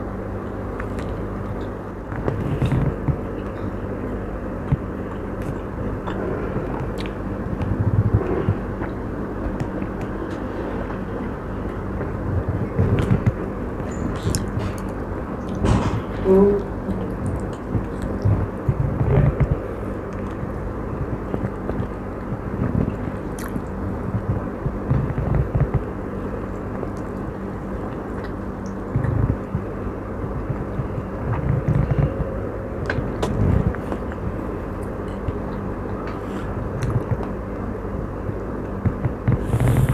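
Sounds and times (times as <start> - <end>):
background rumble and hum: 0.0 - 39.9
person chewing food: 4.6 - 15.6, 21.3 - 24.4.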